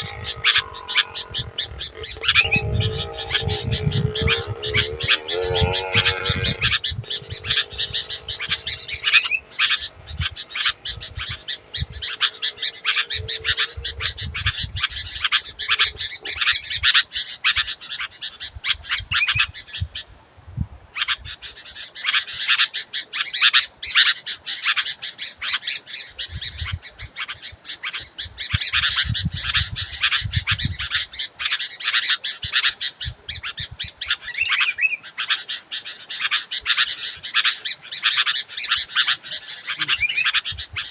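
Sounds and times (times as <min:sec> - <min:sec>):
bird chattering and calling: 0:00.0 - 0:20.1, 0:20.9 - 0:40.9.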